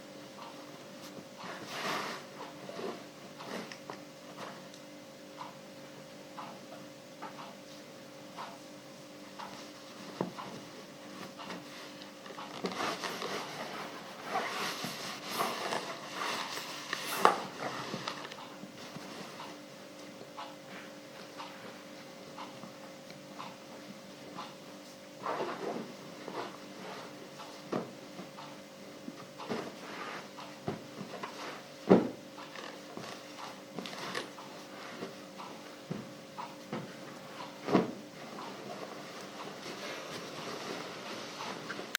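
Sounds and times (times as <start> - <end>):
faint steady hum: 0.0 - 41.9
iron sliding on ironing board: 1.5 - 3.0, 12.6 - 18.1, 29.6 - 30.3
fabric rustling under iron: 36.7 - 41.9.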